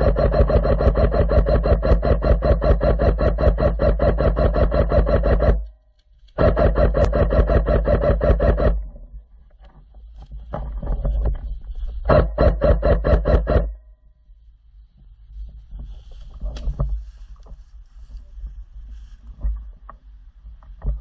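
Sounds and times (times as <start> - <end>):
airsoft gun firing full auto: 0.0 - 5.7, 6.4 - 8.8.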